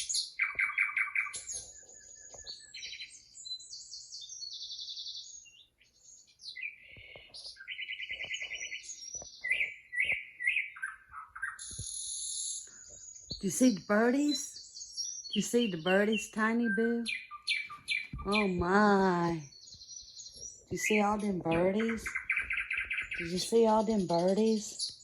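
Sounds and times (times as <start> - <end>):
small birds chirping and trilling: 0.0 - 25.0.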